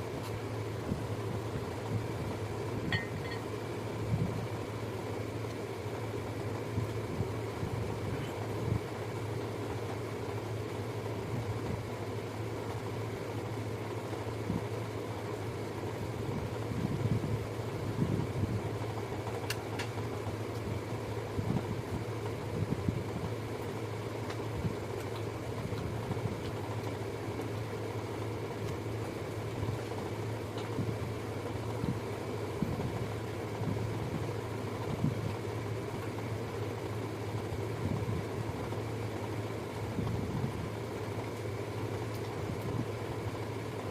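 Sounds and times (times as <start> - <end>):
mechanical hum: 0.0 - 43.9.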